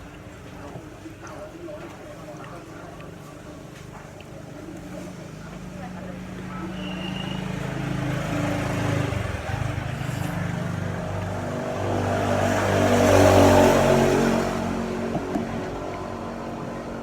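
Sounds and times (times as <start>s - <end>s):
vehicle engine passing: 5.6s - 17.0s.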